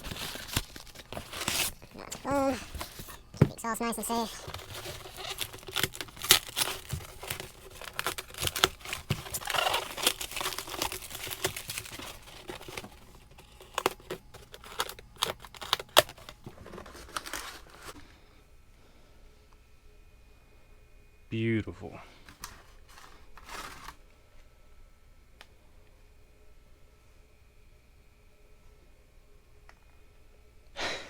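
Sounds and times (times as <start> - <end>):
packing material crumpling: 0.0 - 18.0, 22.3 - 24.0.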